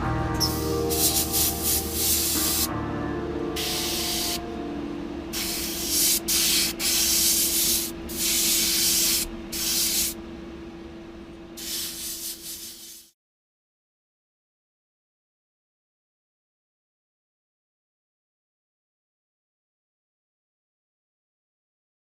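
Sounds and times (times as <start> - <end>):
steady low hum: 0.0 - 12.8
spray paint hissing: 0.4 - 2.7, 3.6 - 4.4, 5.3 - 10.2, 11.6 - 13.1.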